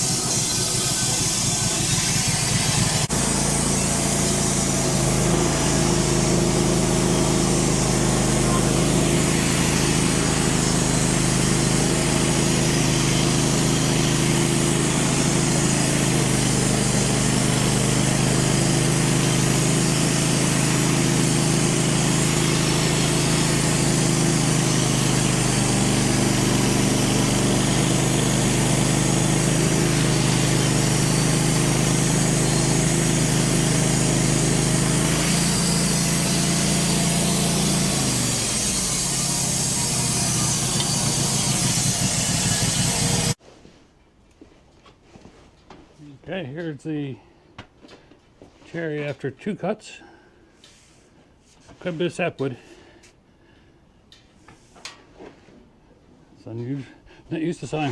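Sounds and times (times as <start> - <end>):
band sawmill cutting log: 0.0 - 43.4, 57.4 - 57.9.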